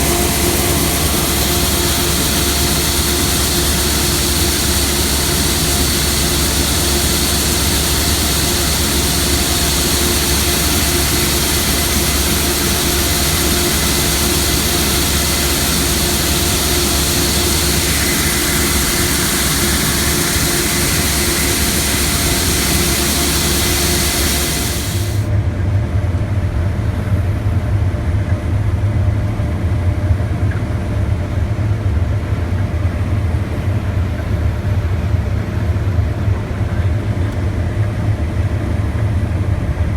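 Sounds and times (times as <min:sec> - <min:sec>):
combine mechanical hiss: 0:00.0 - 0:25.3.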